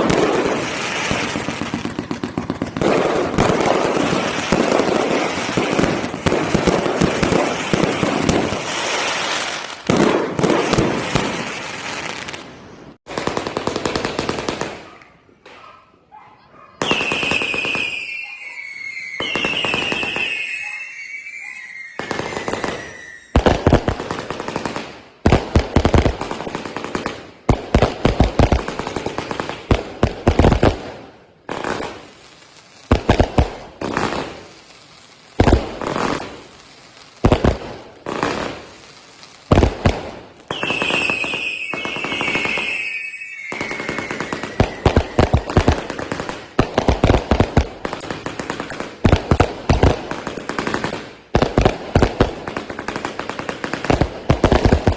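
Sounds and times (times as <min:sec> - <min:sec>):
firework volleys of bangs: 0:00.0 - 0:15.7, 0:16.7 - 0:54.9
falling firework whistle: 0:16.8 - 0:23.7, 0:40.5 - 0:45.9.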